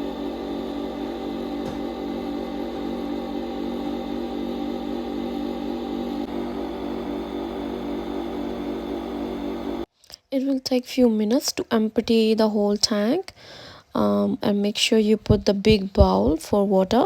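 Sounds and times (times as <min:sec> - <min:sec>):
coffee machine humming: 0:00.0 - 0:09.9
pump pulsing buzz: 0:00.0 - 0:09.9.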